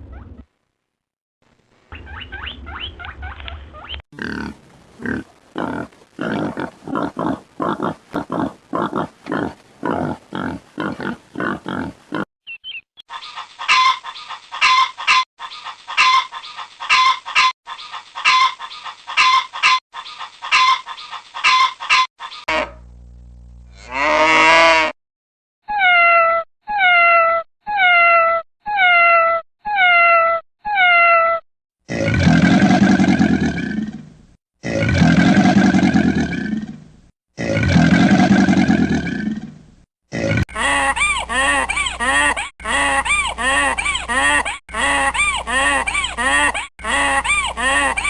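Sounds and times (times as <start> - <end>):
low hum: 22.8 - 23.8.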